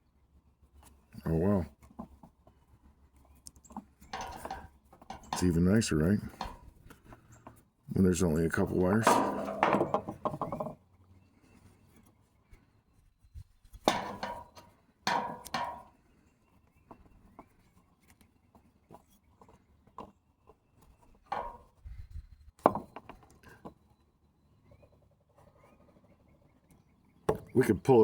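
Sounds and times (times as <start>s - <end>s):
tools clicking and knocking: 3.5s - 5.6s, 6.3s - 6.7s, 8.8s - 10.8s, 13.9s - 15.9s, 21.3s - 21.7s.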